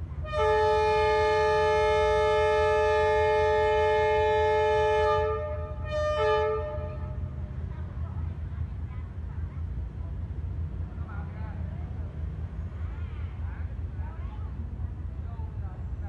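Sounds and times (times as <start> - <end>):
locomotive horn blasts: 0.2 - 7.3.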